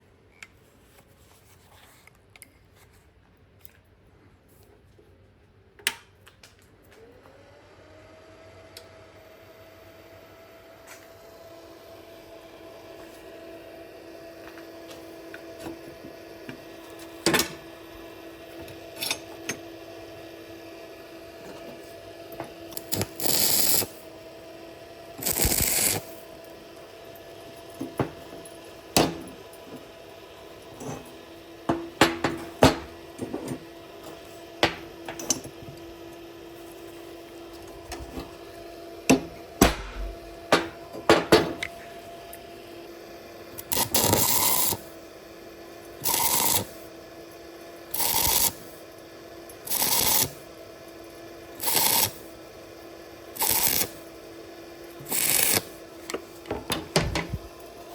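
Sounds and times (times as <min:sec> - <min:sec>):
steady hum: 0:39.6 - 0:41.0.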